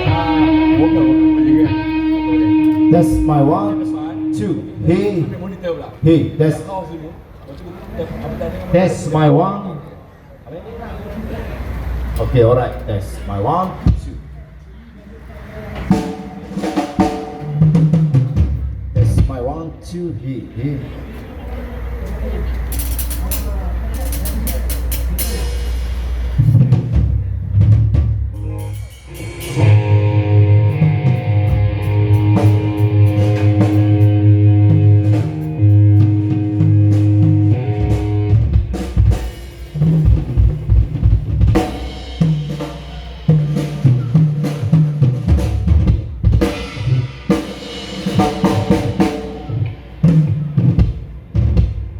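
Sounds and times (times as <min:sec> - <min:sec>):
guitar chords: 0:00.0 - 0:05.5, 0:28.4 - 0:39.2, 0:48.0 - 0:50.2
bass guitar notes: 0:00.0 - 0:06.1, 0:25.0 - 0:51.7
drum kit strikes: 0:15.8 - 0:19.4, 0:22.8 - 0:51.9.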